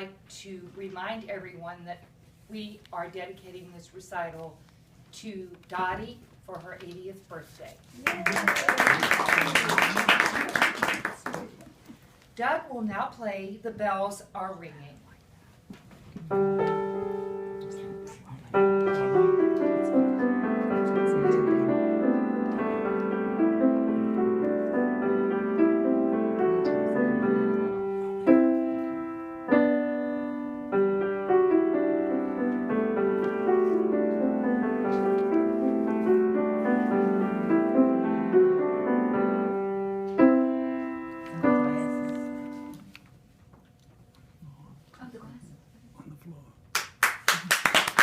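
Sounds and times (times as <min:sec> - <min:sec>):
solo piano piece: 0:16.3 - 0:42.8.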